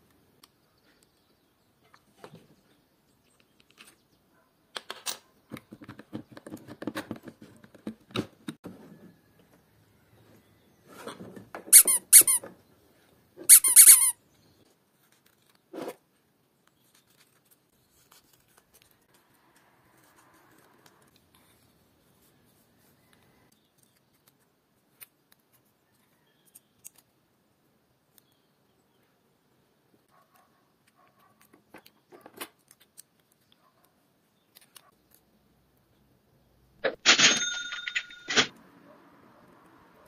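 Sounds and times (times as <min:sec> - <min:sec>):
adhesive tape screeching off roll: 0:11.7 - 0:12.5, 0:13.4 - 0:14.2.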